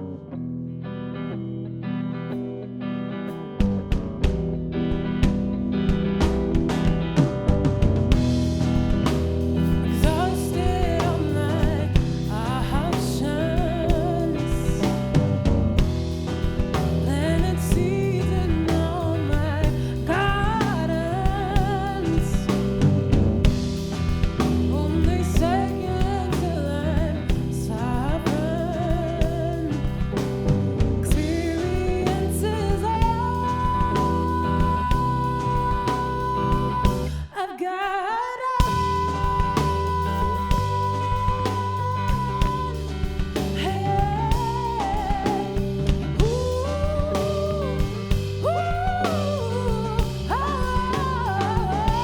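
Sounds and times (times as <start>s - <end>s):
band with guitar: 0.0s - 37.4s, 38.3s - 52.0s
woman singing: 9.6s - 52.0s.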